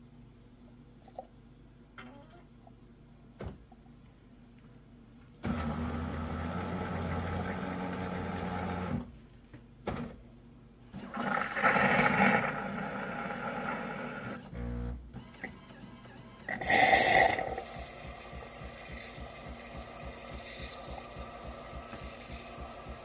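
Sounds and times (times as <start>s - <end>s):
espresso machine hissing and sputtering: 16.5s - 23.0s
espresso machine pump humming: 16.5s - 23.0s.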